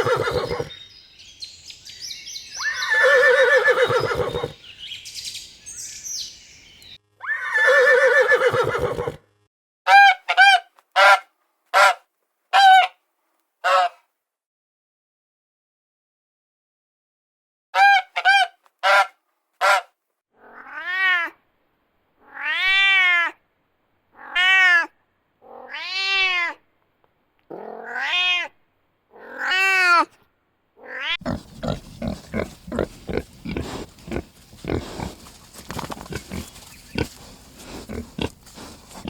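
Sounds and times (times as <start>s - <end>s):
cat meowing: 20.4s - 21.4s, 22.2s - 23.4s, 24.2s - 26.6s, 27.5s - 30.1s, 30.8s - 31.2s
pig grunting: 31.2s - 39.0s.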